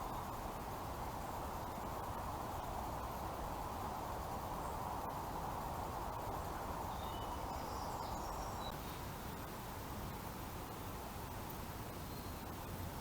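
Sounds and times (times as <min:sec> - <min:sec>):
outdoor background noise: 0:00.0 - 0:13.0.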